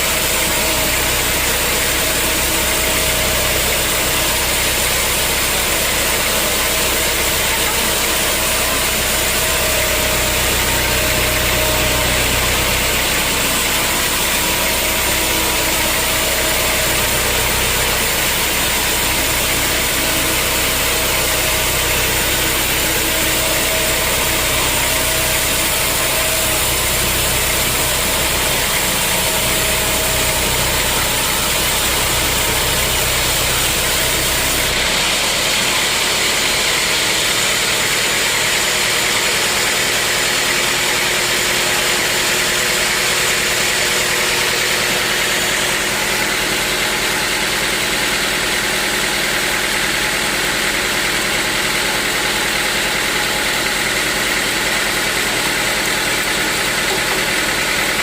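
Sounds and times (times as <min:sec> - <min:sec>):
sawmill machinery hum and hiss: 0:00.0 - 0:58.0.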